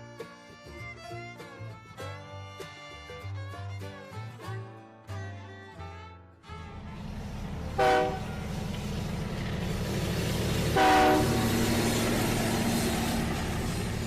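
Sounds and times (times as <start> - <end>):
train running rumble: 6.5 - 14.0
train whistle blasts: 7.7 - 8.5, 10.7 - 11.6.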